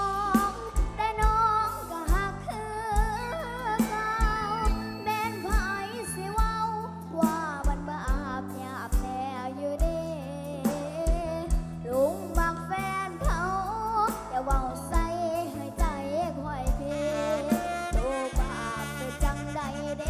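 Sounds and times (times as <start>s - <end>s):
bass line: 0.0s - 20.0s
sliding lead melody: 0.0s - 20.0s.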